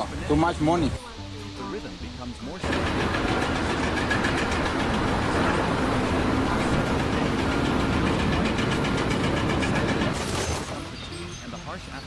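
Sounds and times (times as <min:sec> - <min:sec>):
heavy machine engine running: 0:02.6 - 0:10.9.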